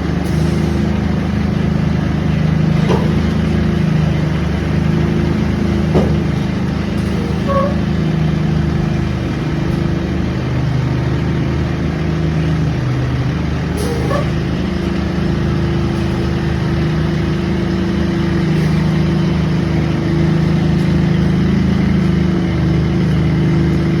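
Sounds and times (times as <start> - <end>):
engine running steadily: 0.0 - 24.0
short squeaks: 2.8 - 3.4, 7.0 - 8.1, 13.7 - 14.6.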